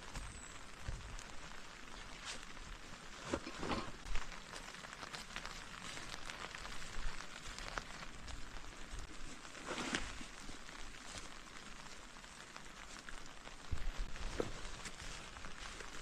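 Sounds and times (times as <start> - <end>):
rain falling: 0.0 - 16.0.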